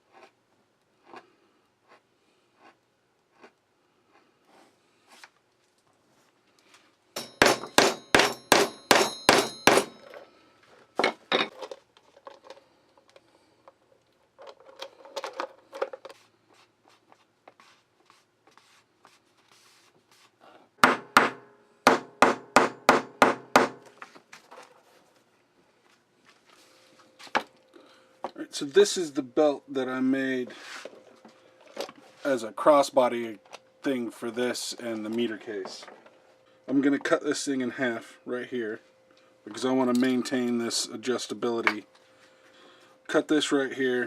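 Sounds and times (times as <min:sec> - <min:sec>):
hammer striking metal tool: 0:07.2 - 0:10.2, 0:20.8 - 0:23.8.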